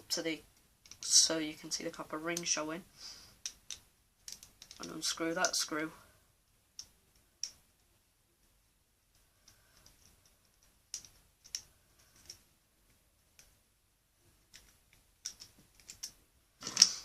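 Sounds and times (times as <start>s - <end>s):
plastic parts being handled: 3.4s - 5.6s, 14.3s - 17.0s.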